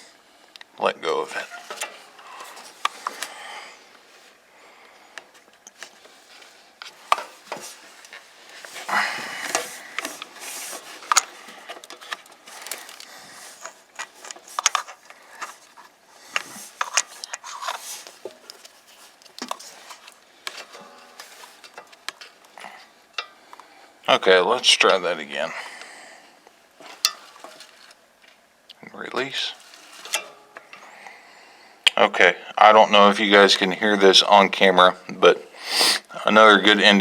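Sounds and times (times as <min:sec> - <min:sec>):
metal parts clicking and scraping: 0:01.4 - 0:03.3, 0:06.8 - 0:22.5, 0:29.6 - 0:30.8.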